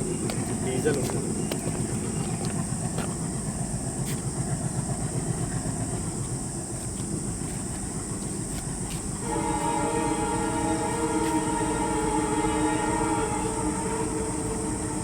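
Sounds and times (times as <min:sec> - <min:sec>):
diesel locomotive engines rumbling: 0:00.0 - 0:15.0
locomotive horn chord: 0:09.2 - 0:15.0.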